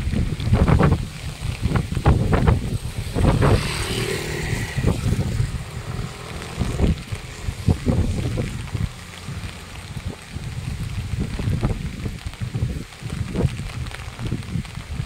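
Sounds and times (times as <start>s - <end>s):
wind buffeting microphone: 0.0s - 15.0s
passing vehicle engine: 2.3s - 10.7s.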